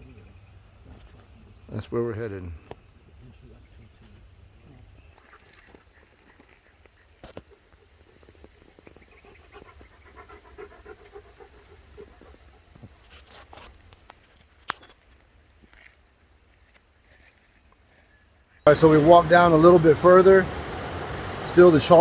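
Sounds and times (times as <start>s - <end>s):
quiet rhythmic panting: 7.6s - 13.3s
low steady hum: 18.7s - 22.0s.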